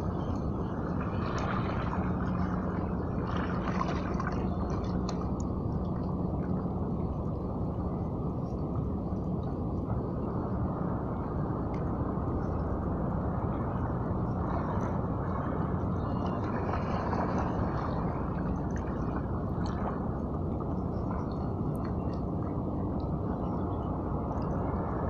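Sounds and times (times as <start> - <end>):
low rumble and hum: 0.0 - 25.0
water gurgling and splashing: 0.7 - 6.6, 13.8 - 23.2.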